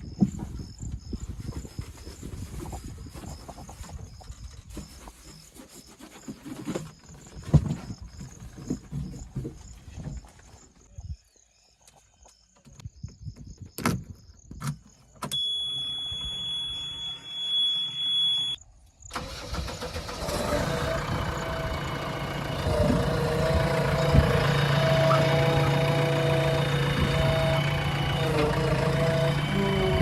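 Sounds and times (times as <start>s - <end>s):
steady high beep: 15.4s - 18.6s
diesel engine starting and running: 15.4s - 30.0s.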